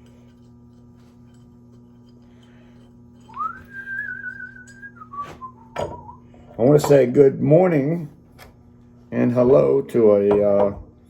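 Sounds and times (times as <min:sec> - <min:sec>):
person whistling: 0:03.3 - 0:06.2.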